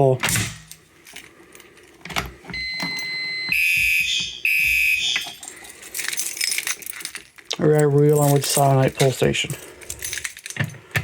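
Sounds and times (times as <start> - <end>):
fire alarm horn blasts: 2.6 - 5.3
high alarm beep: 2.6 - 5.4.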